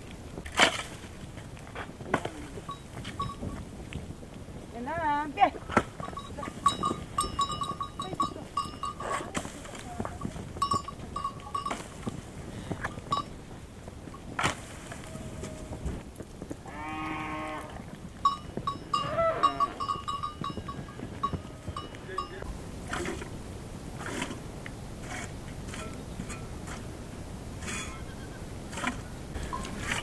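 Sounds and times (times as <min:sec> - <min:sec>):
small animal bells tinkling: 0:02.6 - 0:03.6, 0:06.0 - 0:09.1, 0:10.0 - 0:12.0, 0:13.0 - 0:13.4, 0:18.2 - 0:22.5.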